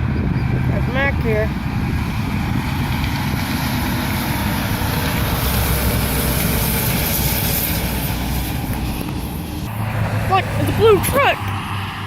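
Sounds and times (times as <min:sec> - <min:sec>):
road traffic rumble: 0:00.0 - 0:12.0
truck driving past: 0:00.0 - 0:12.0.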